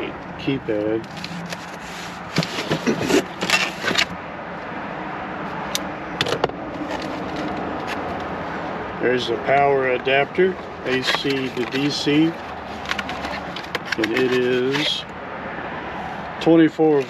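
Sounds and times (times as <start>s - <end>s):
packaging rustling and scraping: 1.0s - 4.2s, 6.7s - 8.3s, 10.6s - 15.1s.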